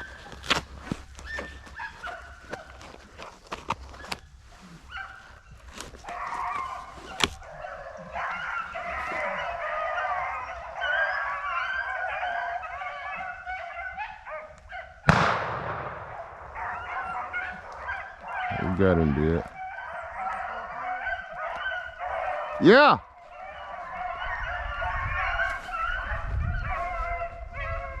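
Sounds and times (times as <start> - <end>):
hounds baying: 0.0 - 28.0
shotgun blast: 15.1 - 16.4.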